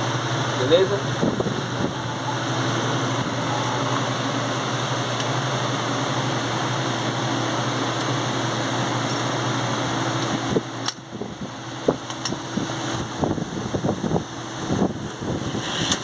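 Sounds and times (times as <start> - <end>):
steady mechanical hum: 0.0 - 16.0.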